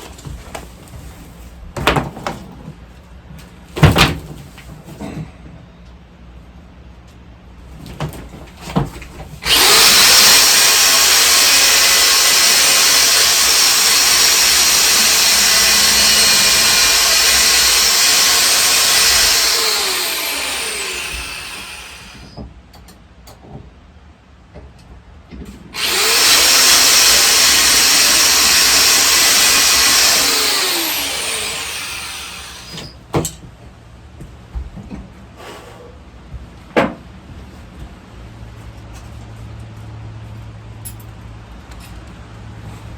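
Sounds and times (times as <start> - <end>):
power tool running and spinning down: 9.4 - 22.4, 25.8 - 33.0.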